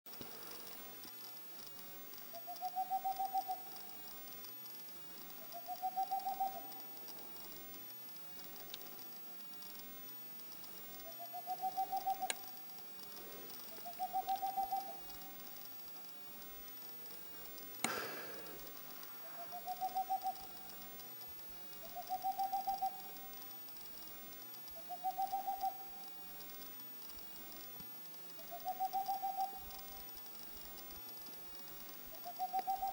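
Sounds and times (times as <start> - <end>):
owl hooting: 2.4 - 3.7, 5.6 - 6.8, 11.1 - 12.5, 13.8 - 15.3, 19.1 - 20.7, 21.8 - 23.3, 24.8 - 26.2, 28.4 - 30.0, 32.2 - 32.9
sharp click: 17.8 - 18.2.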